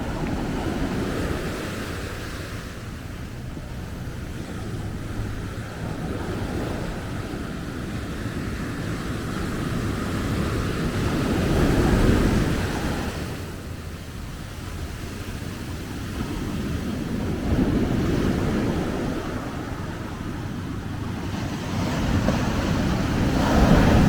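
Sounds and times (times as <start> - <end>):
ocean wave washing on beach: 0.0 - 24.0
wind rumbling on microphone: 0.0 - 24.0.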